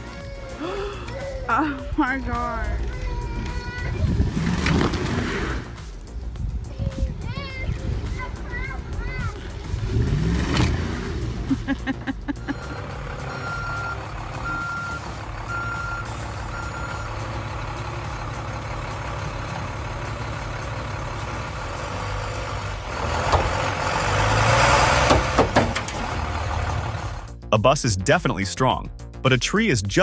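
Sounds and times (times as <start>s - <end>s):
bus engine running: 0.0s - 27.4s
reversing alarm beeps: 12.5s - 17.2s
knocks: 25.1s - 26.0s.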